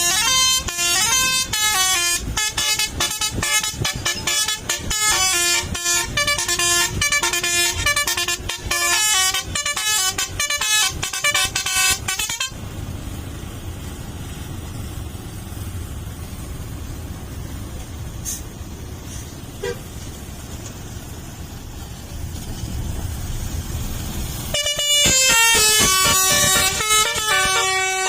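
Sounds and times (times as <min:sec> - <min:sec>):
musical air horn tune: 0:00.0 - 0:12.6, 0:19.6 - 0:19.9, 0:24.5 - 0:28.0
bus engine rumble: 0:00.0 - 0:28.0.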